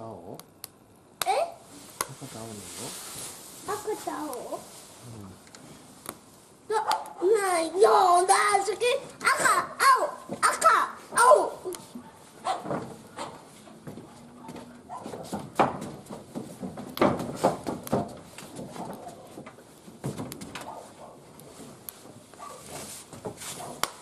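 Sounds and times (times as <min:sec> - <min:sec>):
wood fire crackling: 0:00.0 - 0:24.0
sharp pops: 0:00.4 - 0:02.3, 0:05.4 - 0:07.2, 0:20.0 - 0:24.0.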